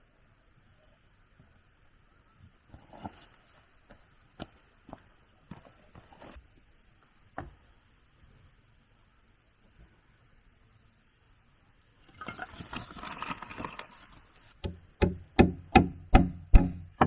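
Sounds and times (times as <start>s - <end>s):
knocks and thuds on wood: 14.6s - 17.0s.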